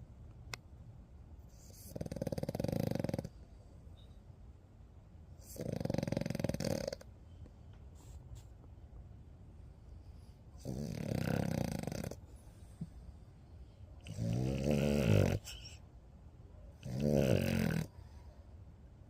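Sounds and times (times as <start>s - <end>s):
dog snoring loudly: 1.6s - 3.4s, 5.4s - 7.1s, 10.6s - 12.2s, 14.0s - 15.8s, 16.8s - 18.0s.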